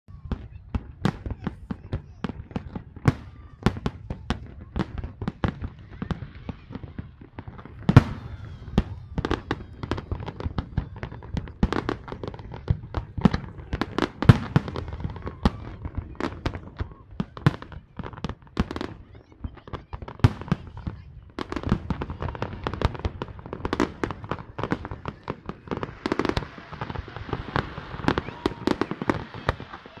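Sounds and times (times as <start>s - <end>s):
fireworks bangs and crackles: 0.1s - 30.0s.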